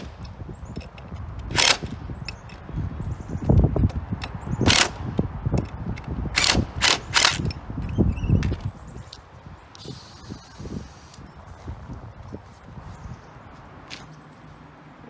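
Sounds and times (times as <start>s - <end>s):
cordless driver zapping: 0.0s - 2.8s, 3.5s - 8.7s
handling clanks: 0.0s - 8.7s.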